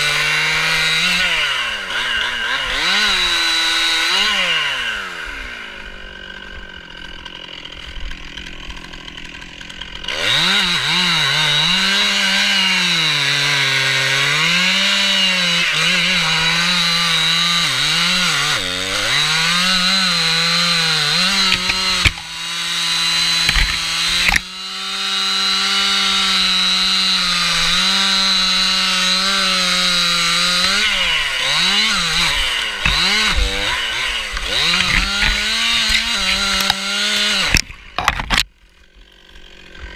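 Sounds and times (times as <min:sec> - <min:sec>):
chainsaw revving through wood: 0:00.0 - 0:39.9
sharp knocks: 0:23.3 - 0:24.4, 0:32.8 - 0:33.4.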